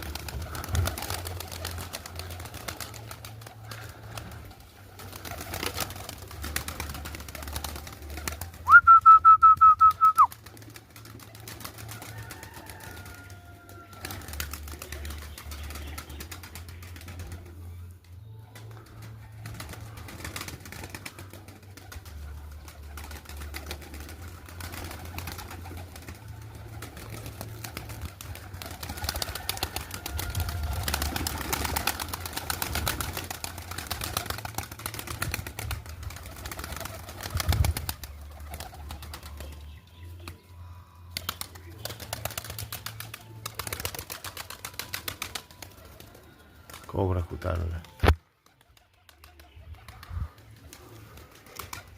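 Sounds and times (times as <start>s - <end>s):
faint bird sounds: 11.1s - 34.3s, 35.9s - 51.9s.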